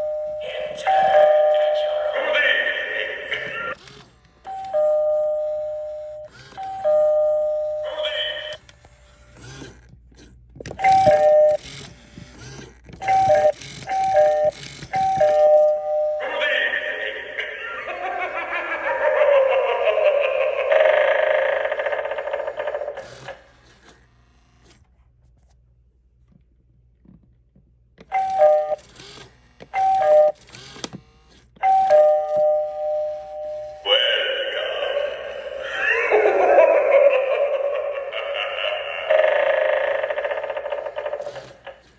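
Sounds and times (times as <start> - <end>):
doorbell prop ding-dong chime: 31.6 - 33.7.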